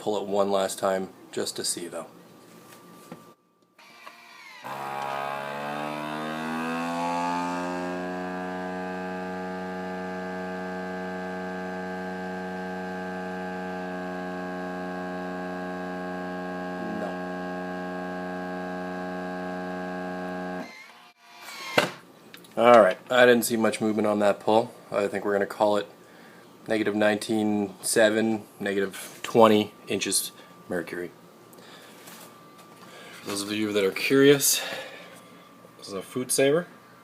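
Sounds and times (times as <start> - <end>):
vacuum sealer pump humming: 3.8 - 21.0.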